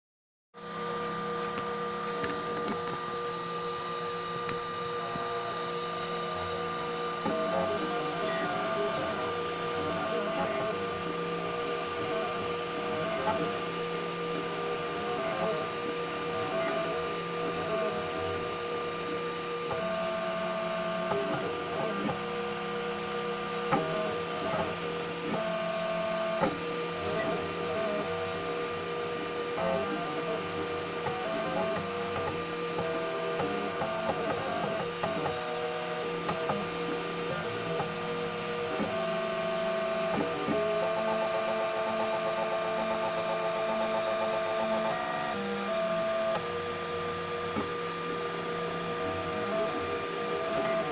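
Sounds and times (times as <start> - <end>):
three d printer humming: 0.6 - 50.9
stepper motors whining: 1.4 - 19.0.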